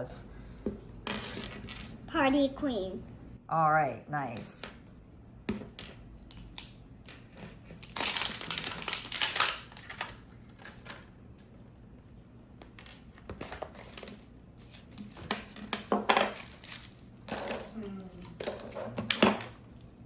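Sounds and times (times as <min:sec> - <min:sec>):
plastic packaging crinkling: 0:07.3 - 0:11.1.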